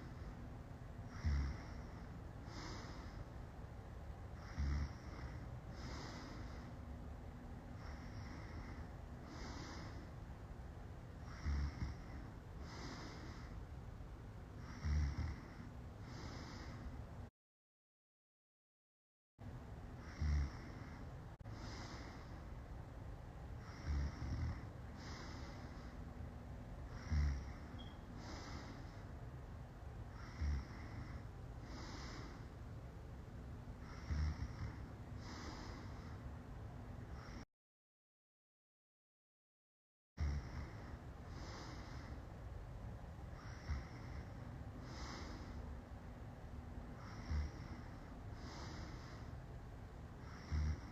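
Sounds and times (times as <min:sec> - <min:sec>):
woman snoring: 0:01.1 - 0:03.2, 0:04.4 - 0:06.7, 0:11.2 - 0:13.5, 0:14.6 - 0:16.8, 0:20.0 - 0:21.0, 0:23.6 - 0:25.8, 0:26.9 - 0:28.9, 0:30.1 - 0:32.5, 0:33.8 - 0:36.2, 0:40.2 - 0:42.2, 0:43.4 - 0:45.6, 0:47.0 - 0:49.3, 0:50.2 - 0:50.9.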